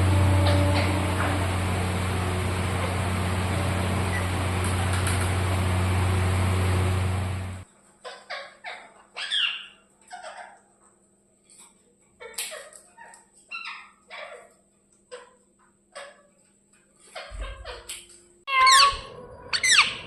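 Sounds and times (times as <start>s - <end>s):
low hum: 0.0s - 7.6s, 18.7s - 20.0s
parrot chirping and squawking: 8.0s - 10.6s, 12.2s - 15.4s, 18.5s - 20.0s.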